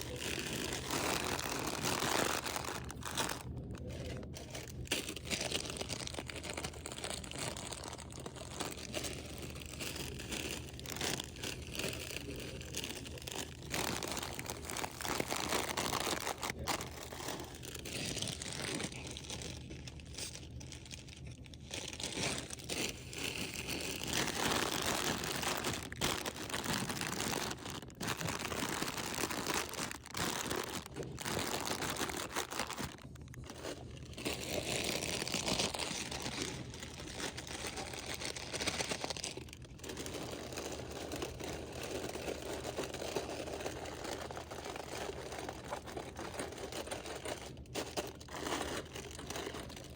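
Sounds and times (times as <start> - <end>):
plastic wrappers crinkling: 0.0 - 49.9.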